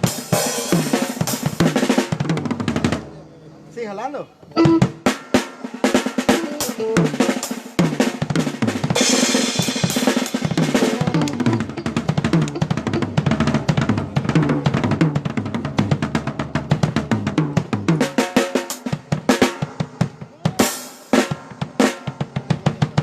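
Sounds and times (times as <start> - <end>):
drum kit playing: 0.0 - 23.0
low pitched notes: 2.2 - 5.2, 10.5 - 16.1.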